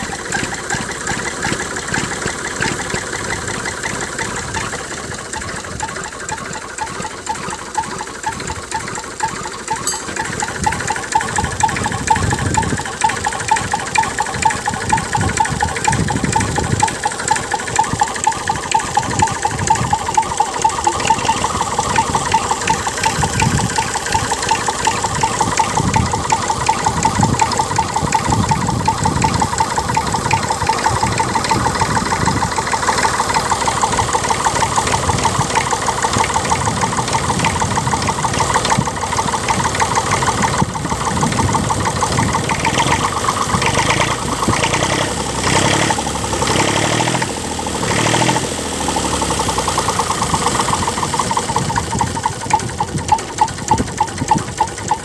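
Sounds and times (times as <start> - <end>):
tractor engine idling: 0.0 - 55.0.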